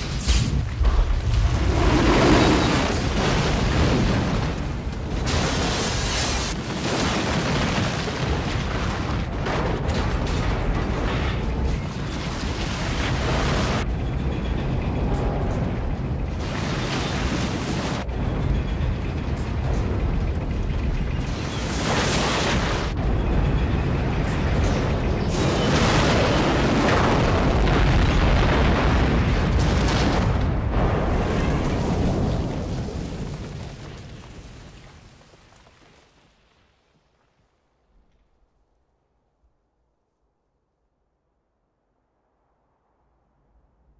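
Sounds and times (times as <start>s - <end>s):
heavy rumble: 7.4s - 33.8s
explosive crashing: 16.2s - 34.3s.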